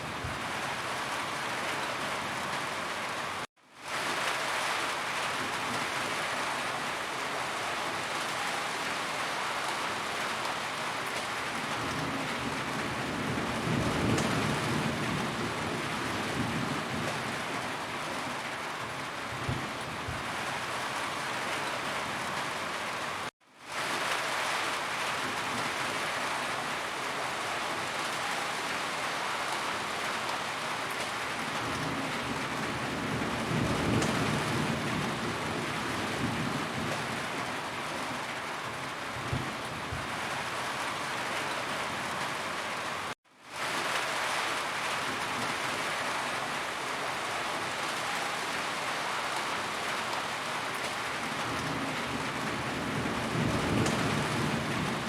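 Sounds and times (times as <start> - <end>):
rain falling on a roof: 0.0 - 55.0
thunder rumbling: 51.4 - 55.0.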